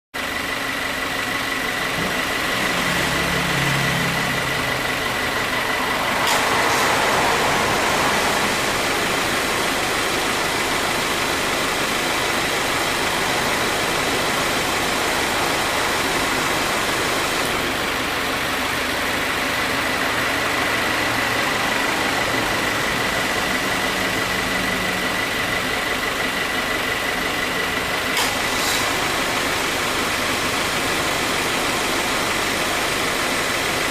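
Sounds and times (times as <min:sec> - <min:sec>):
car engine running: 0:00.2 - 0:33.9
high whine: 0:01.7 - 0:27.7
brief burst of compressor noise: 0:01.8 - 0:18.0, 0:28.1 - 0:31.0.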